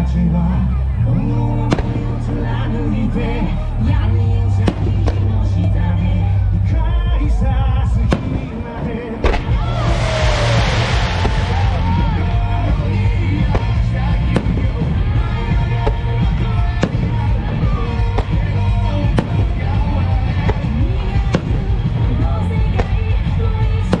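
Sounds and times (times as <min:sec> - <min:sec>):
music over loudspeakers: 0:00.0 - 0:24.0
fireworks bangs: 0:08.0 - 0:24.0.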